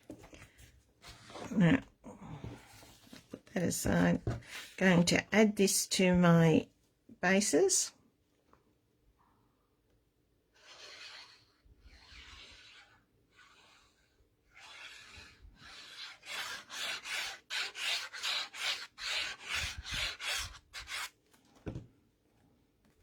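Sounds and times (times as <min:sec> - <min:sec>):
hand rubbing paper: 0:10.6 - 0:21.1.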